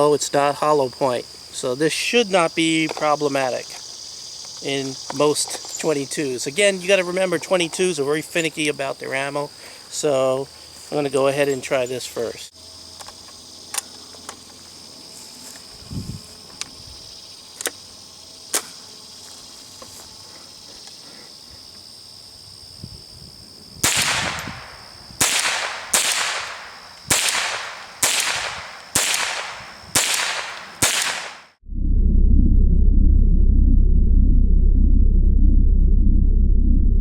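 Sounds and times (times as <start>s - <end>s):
insect chirring: 0.0s - 31.6s
rifle shots echoing: 23.8s - 31.5s.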